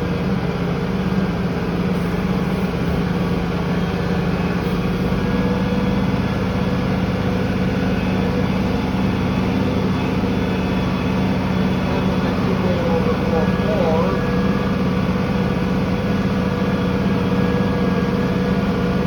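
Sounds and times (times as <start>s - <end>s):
tractor engine running: 0.0s - 19.0s
air conditioning: 6.0s - 19.0s.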